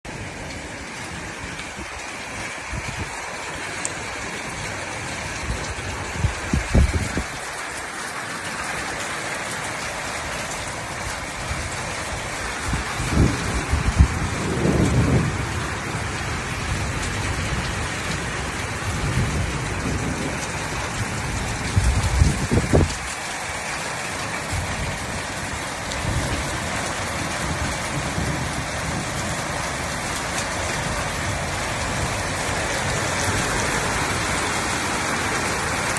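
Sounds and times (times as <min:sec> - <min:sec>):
heavy rain: 0:00.0 - 0:35.9
deep thunder rumbles: 0:11.4 - 0:23.1, 0:24.5 - 0:35.9.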